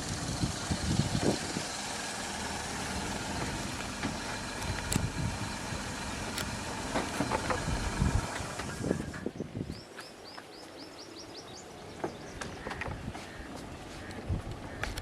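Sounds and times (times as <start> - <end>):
car engine running: 0.0 - 9.2
sharp clicks: 4.6 - 5.1.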